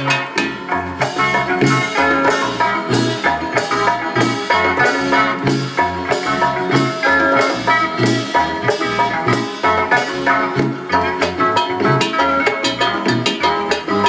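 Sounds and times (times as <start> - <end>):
instrumental latin dance music: 0.0 - 14.0.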